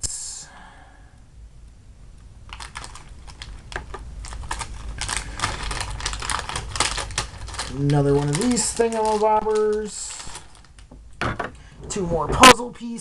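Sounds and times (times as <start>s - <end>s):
packaging crinkling and clicking: 2.5s - 11.1s.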